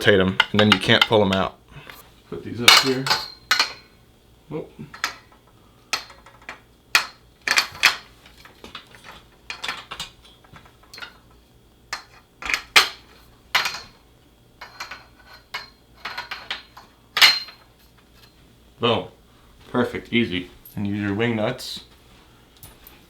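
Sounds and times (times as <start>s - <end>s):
metal tubes knocking together: 0.0s - 1.5s, 2.6s - 3.9s, 4.9s - 14.0s.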